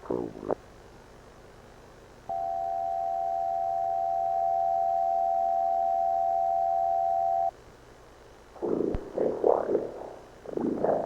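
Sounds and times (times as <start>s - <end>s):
steady electronic tone: 2.3s - 7.5s.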